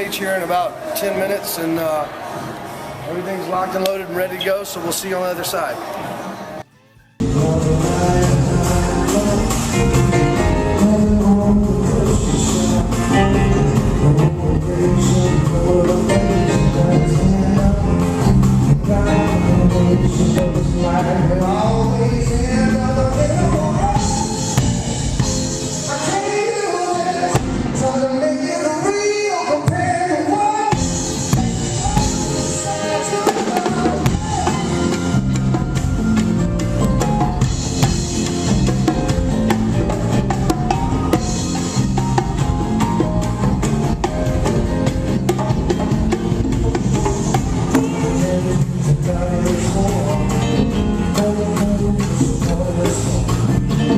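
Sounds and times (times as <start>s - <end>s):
band playing: 3.6s - 53.9s
person singing: 6.6s - 36.0s, 44.0s - 53.9s.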